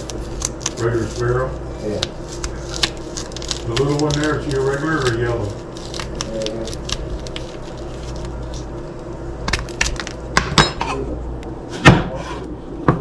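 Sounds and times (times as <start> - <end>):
kitchenware clinking and knocking: 10.4 - 11.0.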